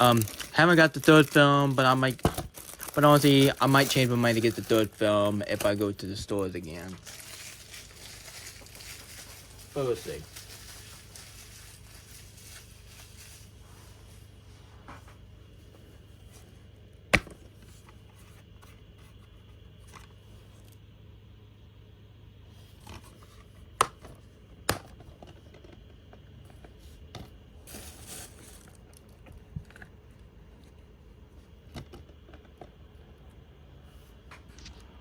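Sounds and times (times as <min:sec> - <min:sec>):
packaging scraping rustle: 0:00.0 - 0:05.9, 0:06.7 - 0:14.3, 0:27.6 - 0:29.3.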